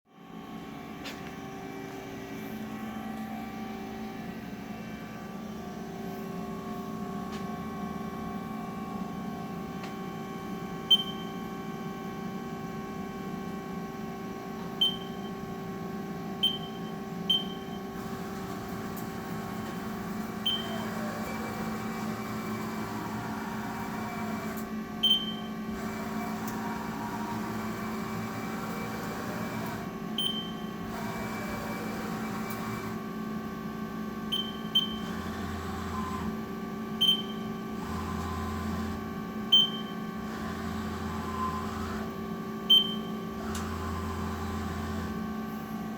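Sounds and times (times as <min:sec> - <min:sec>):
short high keypad beeps: 0:10.9 - 0:11.3, 0:14.8 - 0:15.3, 0:16.4 - 0:17.7, 0:20.4 - 0:20.8, 0:25.0 - 0:25.5, 0:30.2 - 0:30.6, 0:34.3 - 0:35.0, 0:37.0 - 0:37.5, 0:39.6 - 0:40.0, 0:42.7 - 0:43.1.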